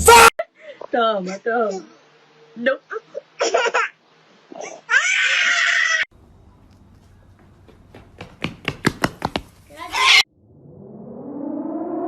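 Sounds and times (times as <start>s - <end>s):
low hum: 10.3s - 12.0s.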